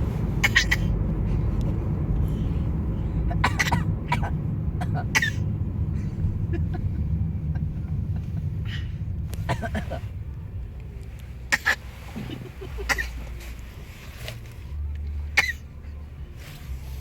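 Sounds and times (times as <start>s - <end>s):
car interior rumble: 0.0s - 17.0s
baby coughing: 0.4s - 1.0s, 3.3s - 5.4s, 9.5s - 10.0s, 11.5s - 13.2s, 15.4s - 15.6s
man coughing: 3.3s - 5.4s, 9.4s - 10.1s, 11.6s - 13.2s.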